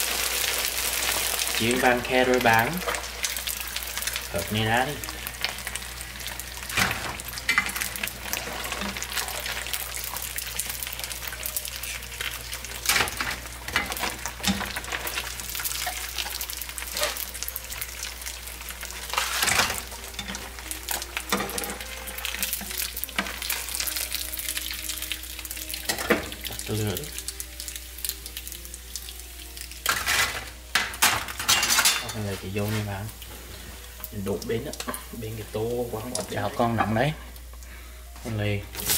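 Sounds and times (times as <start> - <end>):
noodles sizzling in hot oil: 0.0 - 38.9
utensil scraping a pan: 16.9 - 17.3, 19.0 - 20.5.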